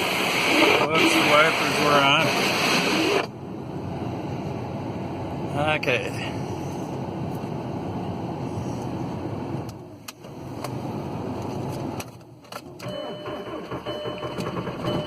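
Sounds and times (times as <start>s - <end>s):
engine running with thin whine: 0.0s - 15.0s
diesel engine starting: 11.9s - 15.0s.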